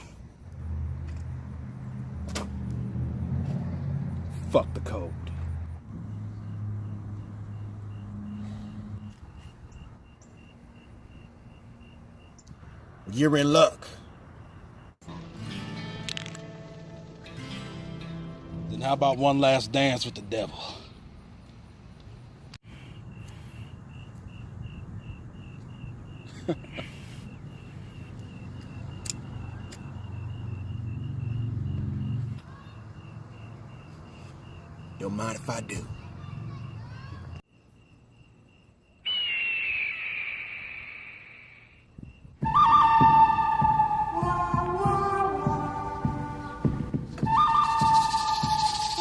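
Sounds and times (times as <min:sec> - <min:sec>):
cricket chirping: 0:04.2 - 0:15.1, 0:22.6 - 0:49.0
high repeating chirp: 0:38.9 - 0:44.4, 0:47.4 - 0:49.0.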